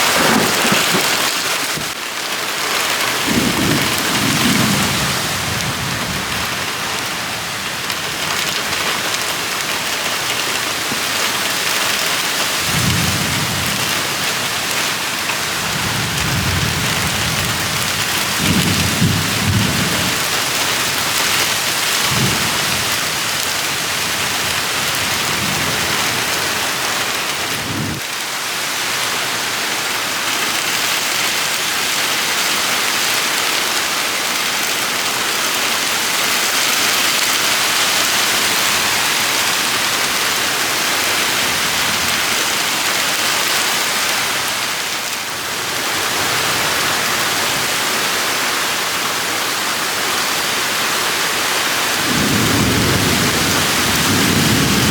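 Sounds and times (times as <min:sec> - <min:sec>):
low rumble of thunder: 0:00.0 - 0:02.0, 0:03.3 - 0:06.5
heavy rain pouring: 0:00.0 - 0:54.9.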